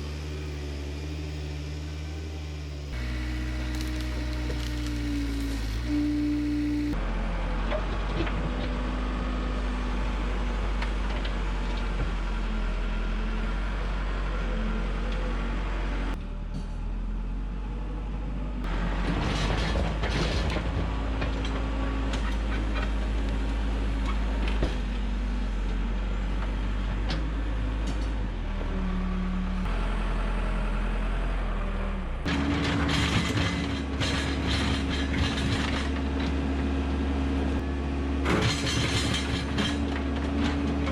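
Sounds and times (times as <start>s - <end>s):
diesel engine running: 0.0s - 40.9s
machine clanking and rattling: 18.7s - 23.1s, 32.3s - 36.4s, 38.2s - 40.9s.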